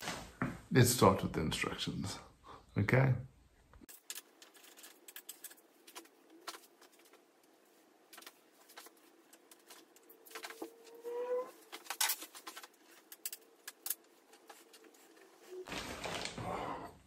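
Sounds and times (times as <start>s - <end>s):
short rising squeak: 10.8s - 11.5s
small parts clicking and jangling: 11.6s - 14.8s.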